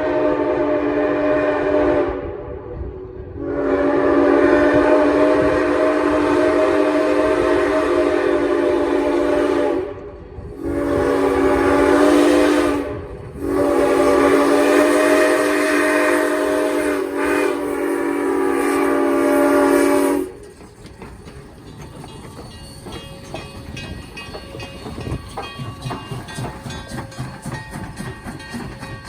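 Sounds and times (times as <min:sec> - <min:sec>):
train horn chord blast: 0:00.0 - 0:20.4
train wheels clicking over rail joints: 0:04.2 - 0:29.0.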